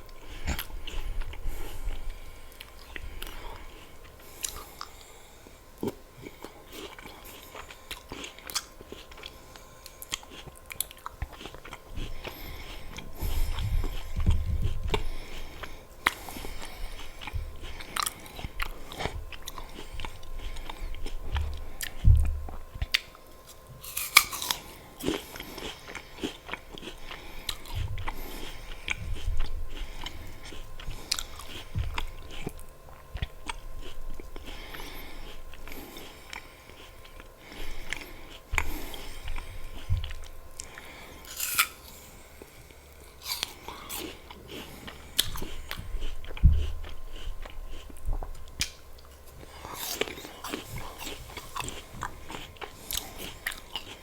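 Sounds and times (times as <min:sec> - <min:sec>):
chewing: 0:00.0 - 0:54.0
biting crisp apple: 0:05.8 - 0:37.3, 0:37.9 - 0:42.1, 0:43.0 - 0:54.0
sharp crunches: 0:41.3 - 0:42.0.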